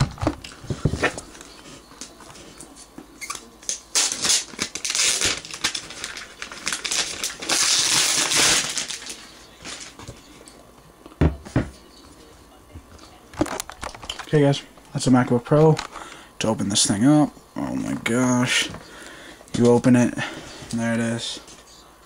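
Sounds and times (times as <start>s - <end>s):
packaging rustling and crinkling: 3.2s - 10.3s.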